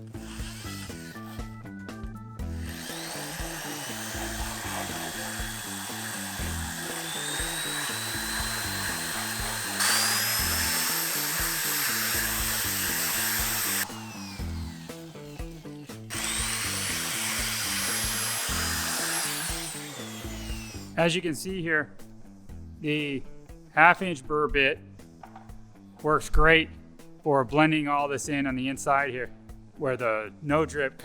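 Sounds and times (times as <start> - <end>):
electric drill grinding with high whine: 0.0 - 1.7, 2.4 - 21.0
background music: 0.0 - 31.0.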